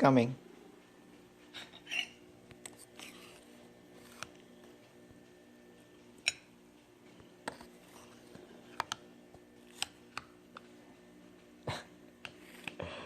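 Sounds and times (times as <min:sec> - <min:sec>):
faint steady hum: 0:00.0 - 0:13.0
kitchenware clinking: 0:01.5 - 0:02.2.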